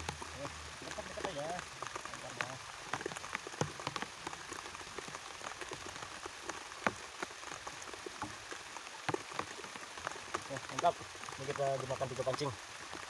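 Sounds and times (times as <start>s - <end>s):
light rain pattering: 0.0s - 13.0s.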